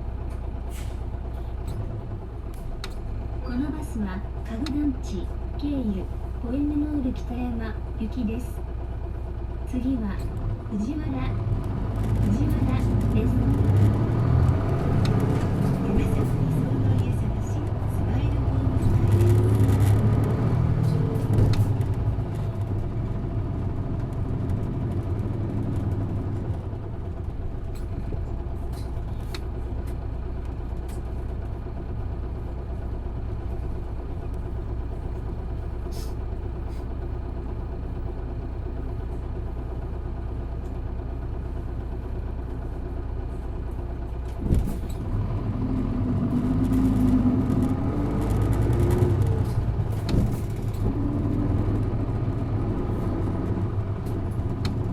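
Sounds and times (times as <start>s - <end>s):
bus diesel engine rumble: 0.0s - 54.9s
thump: 44.4s - 44.9s, 50.0s - 50.5s.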